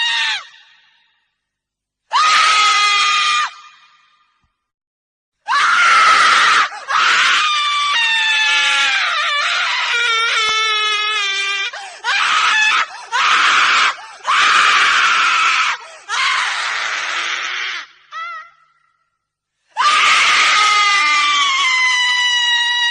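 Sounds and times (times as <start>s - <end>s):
woman screaming: 2.1s - 3.9s, 5.5s - 18.7s, 19.8s - 22.9s
breaths between screams: 11.7s - 12.1s, 15.8s - 16.1s.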